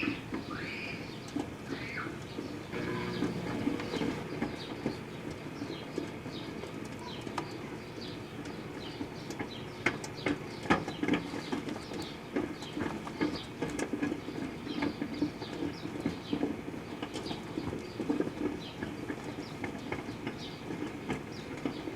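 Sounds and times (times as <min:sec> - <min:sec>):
microwave oven humming: 0:00.0 - 0:05.8.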